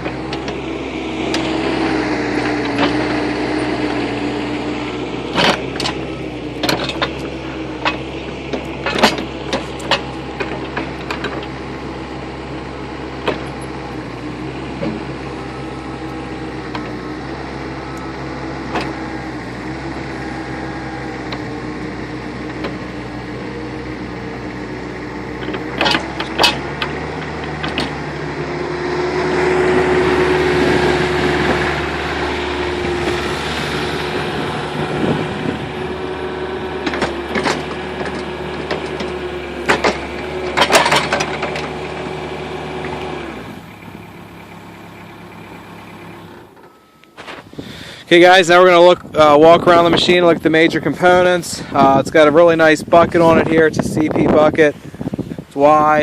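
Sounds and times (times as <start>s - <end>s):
diesel excavator engine whining: 0.0s - 56.0s
metal knocks and clanks: 7.8s - 11.6s, 25.4s - 28.0s, 36.8s - 41.8s.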